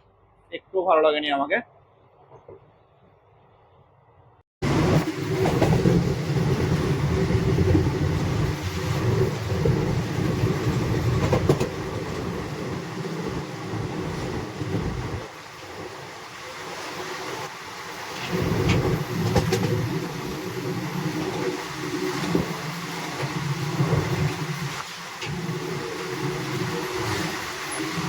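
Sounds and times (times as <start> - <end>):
train coaches rumbling on rails: 4.6 - 28.0
wheels clicking over rail joints: 4.8 - 15.3, 18.0 - 28.0.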